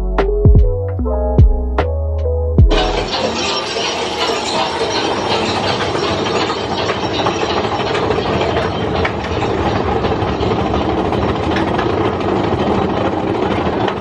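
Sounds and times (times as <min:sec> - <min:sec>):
engine running: 0:00.0 - 0:14.0.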